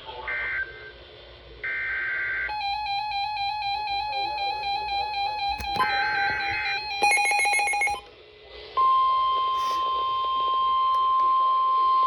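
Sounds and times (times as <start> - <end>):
steady warning alarm tone: 2.4 - 8.1.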